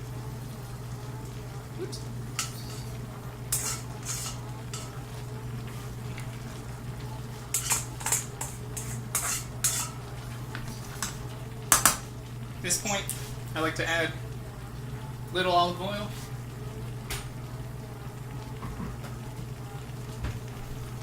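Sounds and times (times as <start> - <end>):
steady low hum: 0.0 - 21.0
utensil clinking against pot: 3.5 - 5.0, 7.5 - 10.0.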